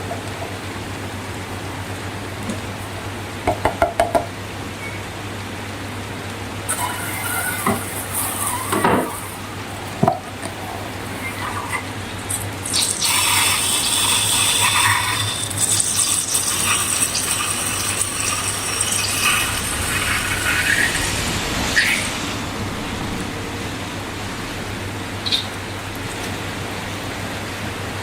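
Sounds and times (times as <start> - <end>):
hissing liquid sound: 6.7 - 24.3.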